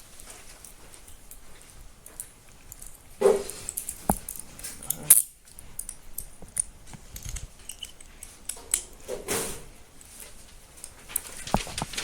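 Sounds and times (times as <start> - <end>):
handcuffs clicking and jingling: 3.7 - 8.9
clothing rustle: 9.2 - 12.0.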